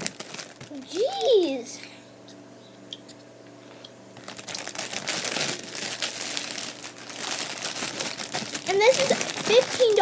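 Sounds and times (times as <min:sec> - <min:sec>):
plastic packaging crinkling: 0:00.0 - 0:01.5, 0:04.2 - 0:10.0
low background hum: 0:00.0 - 0:10.0.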